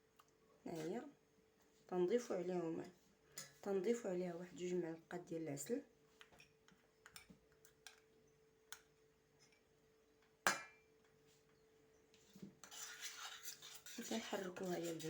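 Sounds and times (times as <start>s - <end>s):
spoon scraping saucepan: 12.3s - 15.0s.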